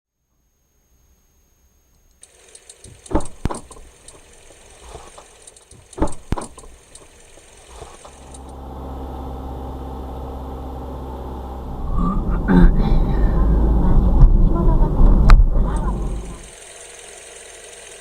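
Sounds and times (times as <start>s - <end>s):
sharp knocks and clicks: 2.2s - 8.5s
car engine running: 2.2s - 18.0s.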